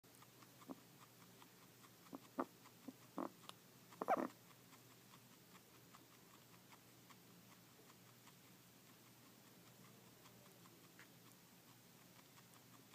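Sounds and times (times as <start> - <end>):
animal making short strange noises: 4.0 - 4.4.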